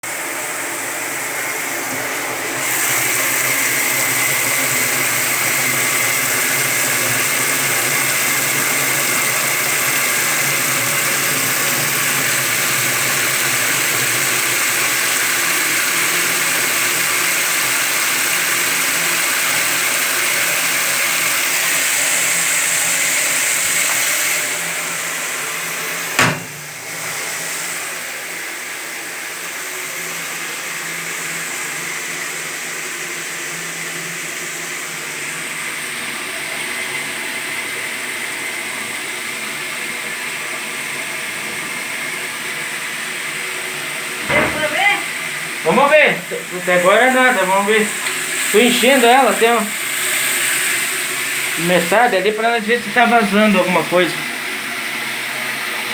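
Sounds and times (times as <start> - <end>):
sharp knock: 26.2 - 26.8, 44.2 - 44.7.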